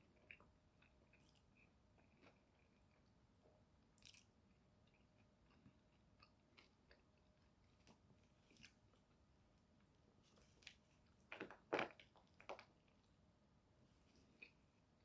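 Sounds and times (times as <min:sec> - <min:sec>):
person chewing: 0:04.0 - 0:04.3.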